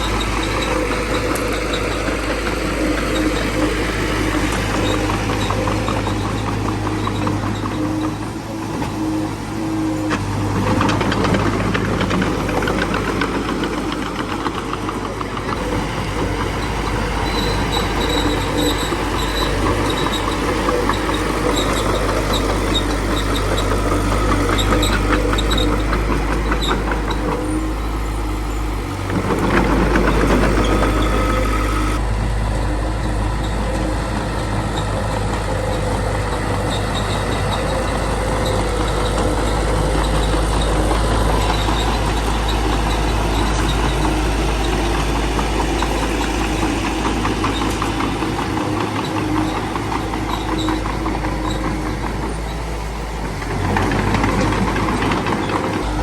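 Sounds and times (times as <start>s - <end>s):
high squeaks: 0.0s - 9.1s, 9.8s - 32.0s, 33.4s - 56.0s
bulldozer diesel engine running: 0.0s - 56.0s.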